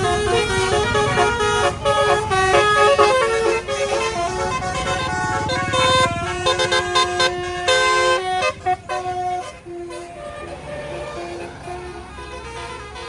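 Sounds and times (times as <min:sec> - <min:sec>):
bus musical horn playing a tune: 0:00.0 - 0:13.0.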